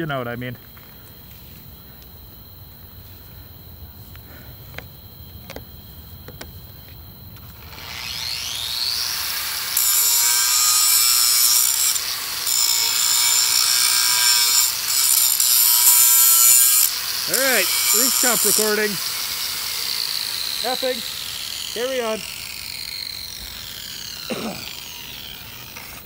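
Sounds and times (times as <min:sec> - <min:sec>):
angle grinder grinding steel: 0:07.6 - 0:26.0.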